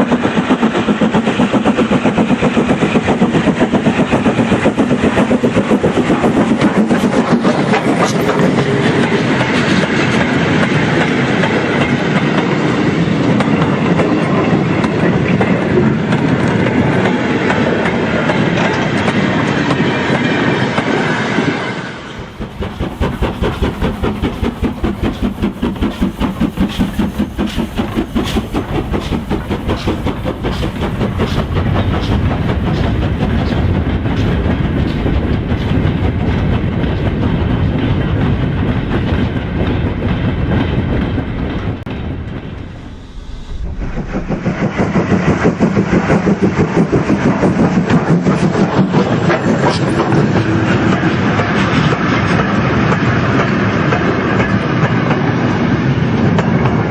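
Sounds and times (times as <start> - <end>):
fast regular train clicking: 0.0 - 56.9
model train rumbling on track: 0.0 - 56.9.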